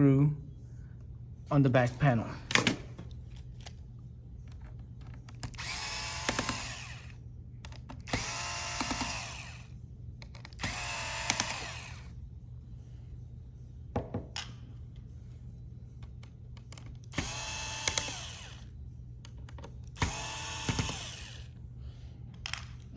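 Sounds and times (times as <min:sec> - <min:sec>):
electric screwdriver whirring: 0:05.4 - 0:07.2, 0:08.0 - 0:09.7, 0:10.5 - 0:12.1, 0:17.1 - 0:18.7, 0:20.0 - 0:21.6.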